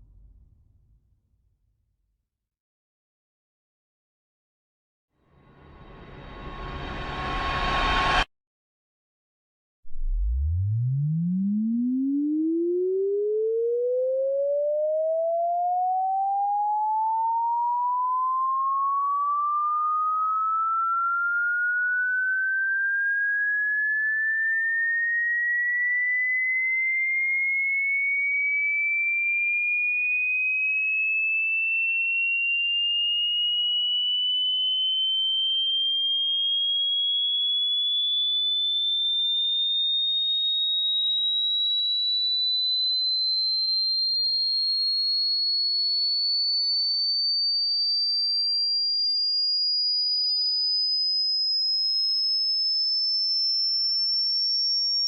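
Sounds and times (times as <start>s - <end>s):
rising electronic tone: 5.6s - 8.3s, 9.9s - 12.0s.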